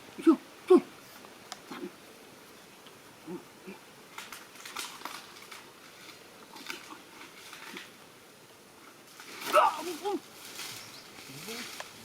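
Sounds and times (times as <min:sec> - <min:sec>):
rustling and scratching: 0:04.1 - 0:08.0, 0:08.8 - 0:12.0.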